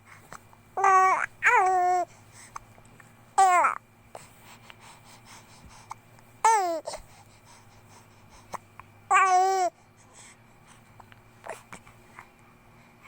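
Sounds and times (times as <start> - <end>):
baby vocalizing: 0.8 - 2.1, 3.4 - 3.8.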